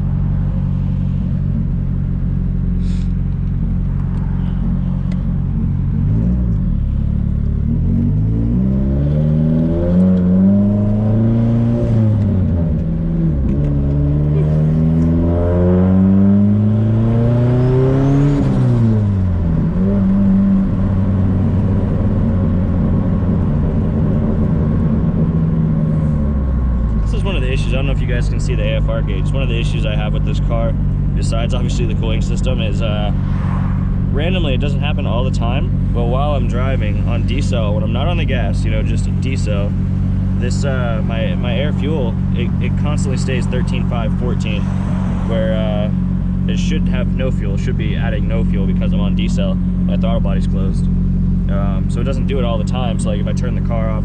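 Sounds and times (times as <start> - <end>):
car engine accelerating through gears: 0.1 - 54.0.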